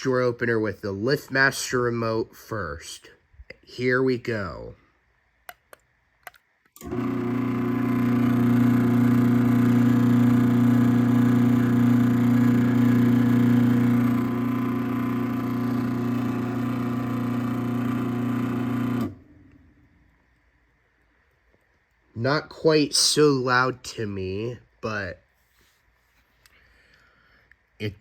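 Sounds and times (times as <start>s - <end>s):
garage door opener humming: 6.8s - 19.7s.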